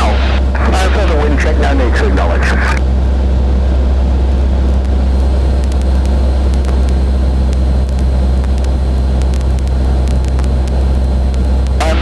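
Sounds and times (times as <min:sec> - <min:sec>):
faint clicks: 0:04.4 - 0:12.0.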